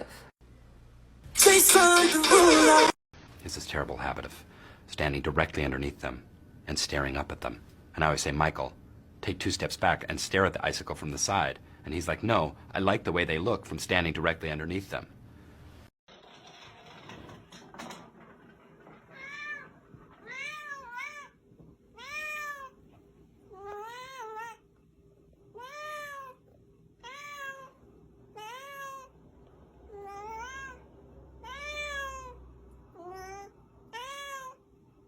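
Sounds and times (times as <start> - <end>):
cat meowing: 19.1 - 22.8, 23.5 - 24.7, 25.5 - 29.1, 29.9 - 34.6.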